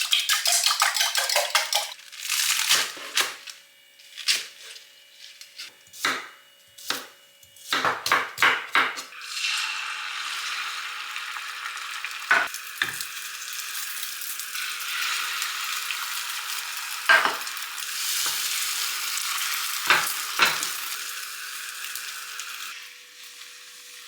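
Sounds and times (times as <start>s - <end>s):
kitchen utensils and dishes clattering: 0.0s - 2.0s, 12.3s - 13.1s, 17.1s - 17.5s, 19.8s - 20.8s
utensil knocking on pan: 7.8s - 9.0s
food sizzling in a frying pan: 9.2s - 24.0s.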